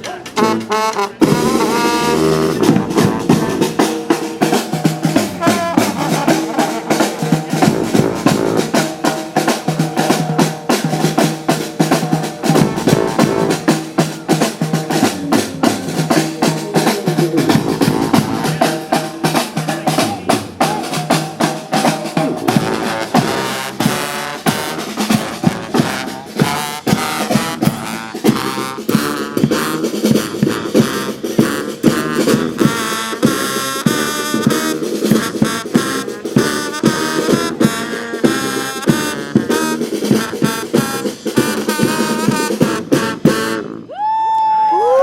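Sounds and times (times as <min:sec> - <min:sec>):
snare drum: 0:00.0 - 0:43.8
horns playing: 0:00.0 - 0:43.9
bass drum beating: 0:01.2 - 0:33.5.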